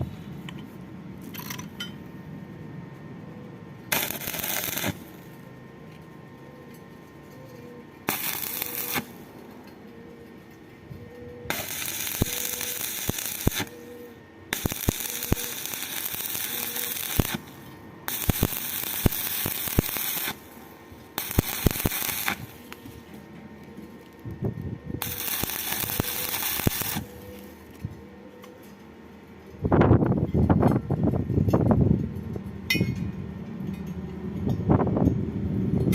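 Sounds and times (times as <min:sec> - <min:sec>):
welding arc crackling and hissing: 0:03.9 - 0:05.4, 0:08.1 - 0:09.3, 0:11.5 - 0:13.9, 0:14.5 - 0:23.2, 0:25.0 - 0:27.6.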